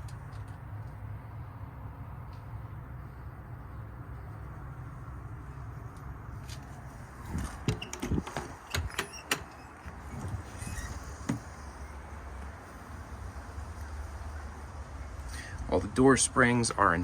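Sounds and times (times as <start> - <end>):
latch and door clicking: 7.4 - 10.0.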